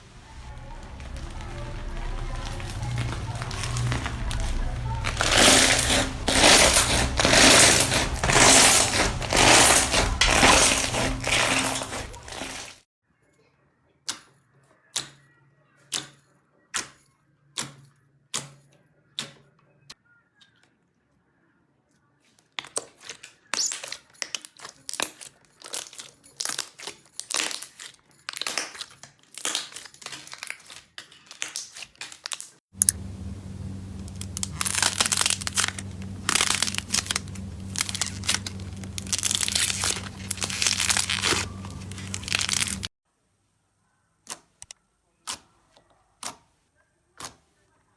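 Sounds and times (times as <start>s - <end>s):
slime crackling and crinkling: 0.0s - 12.8s, 29.3s - 42.9s
steady low hum: 32.8s - 42.9s.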